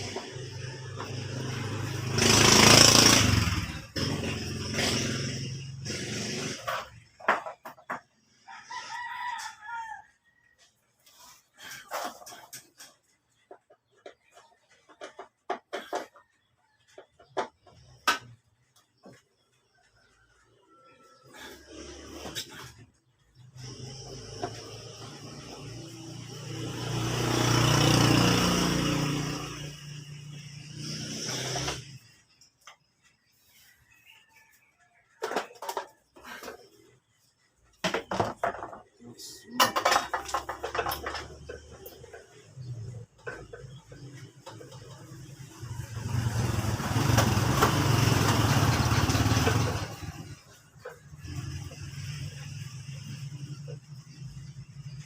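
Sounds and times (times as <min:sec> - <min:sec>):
vehicle engine humming: 0:00.0 - 0:07.2, 0:39.7 - 0:55.0
motor vehicle running: 0:00.0 - 0:08.4, 0:11.1 - 0:55.0.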